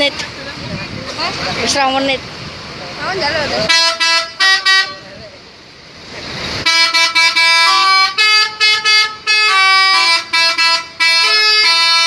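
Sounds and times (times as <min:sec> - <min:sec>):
multi-tone musical air horn: 0:03.7 - 0:05.0, 0:06.6 - 0:12.0.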